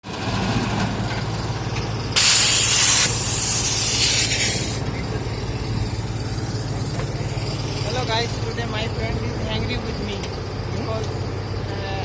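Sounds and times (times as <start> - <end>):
heavy engine running: 0.0 - 12.0
hiss of released air: 2.2 - 4.9.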